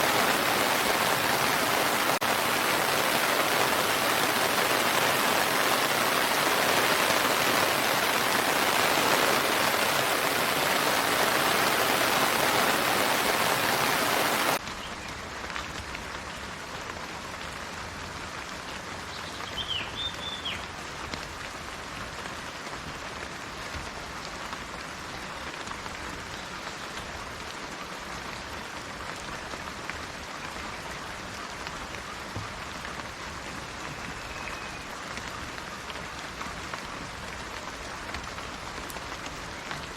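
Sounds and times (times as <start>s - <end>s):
heavy rain: 0.0s - 39.9s
light rain: 0.0s - 39.9s
bird chirping: 19.1s - 20.6s.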